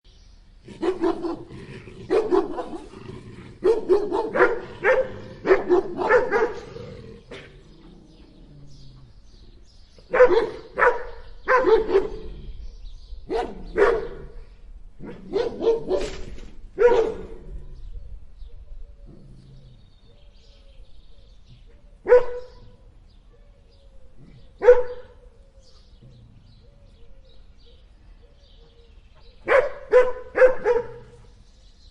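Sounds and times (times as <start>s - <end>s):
large dogs barking: 0.6s - 17.9s, 22.0s - 22.8s, 24.2s - 26.6s, 29.3s - 31.3s.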